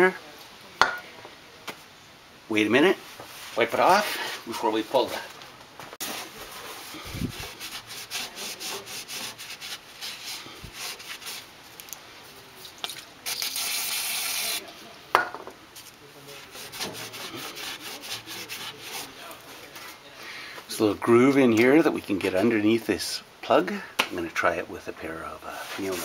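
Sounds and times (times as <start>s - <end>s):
rag wiping and scrubbing: 6.0s - 11.5s, 16.3s - 19.5s, 25.6s - 26.0s.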